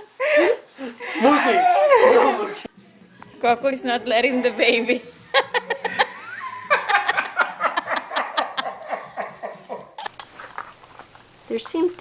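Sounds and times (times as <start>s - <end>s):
person laughing: 5.3s - 10.1s.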